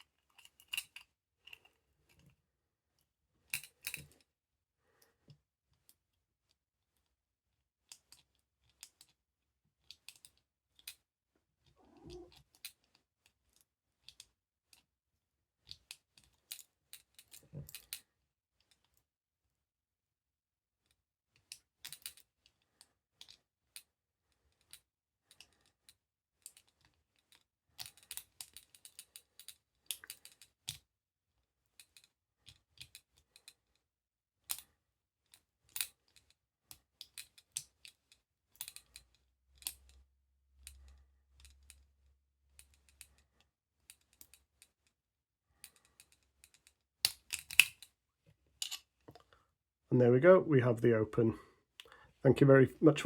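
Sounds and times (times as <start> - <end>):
lock picking metallic clicks: 45.6 - 47.9.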